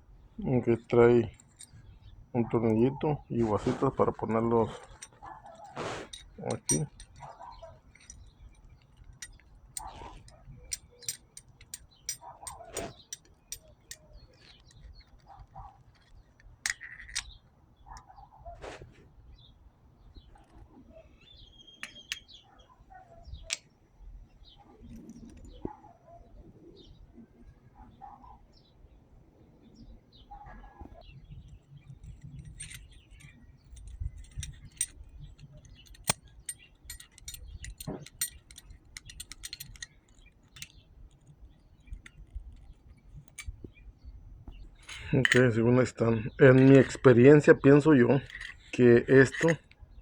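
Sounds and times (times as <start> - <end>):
metallic clicks of screws and tools: 1.2 - 2.8, 3.8 - 18.1, 21.8 - 22.4, 31.3 - 43.9, 44.5 - 49.9
faint bird chirps: 17.2 - 37.8.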